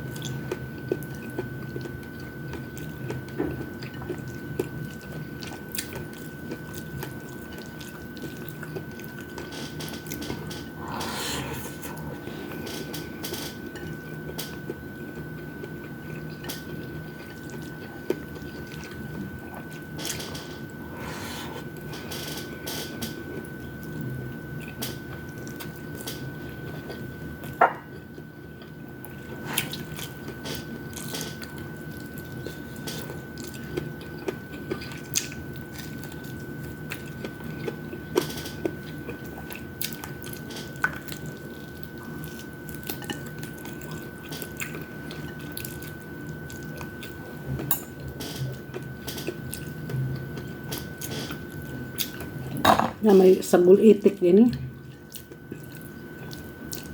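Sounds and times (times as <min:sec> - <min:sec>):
wet chewing: 0:24.6 - 0:47.2, 0:54.8 - 0:56.9.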